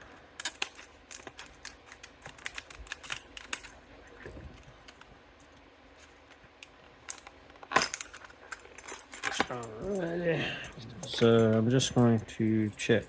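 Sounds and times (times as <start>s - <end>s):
padlock clicking and rattling: 0.4s - 3.8s.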